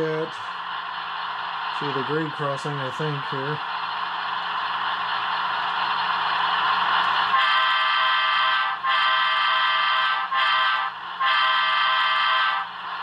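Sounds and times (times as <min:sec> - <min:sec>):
diesel locomotive idling: 0:00.0 - 0:13.0
train chime horn blasts: 0:07.3 - 0:12.6.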